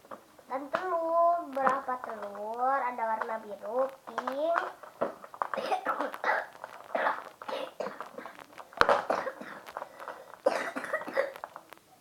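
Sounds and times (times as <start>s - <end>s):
child coughing: 5.6s - 8.4s, 9.0s - 9.6s, 10.4s - 11.4s.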